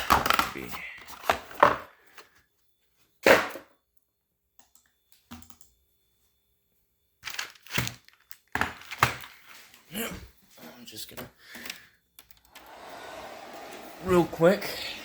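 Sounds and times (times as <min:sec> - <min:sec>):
packaging knocks and rustles: 0:07.2 - 0:09.6.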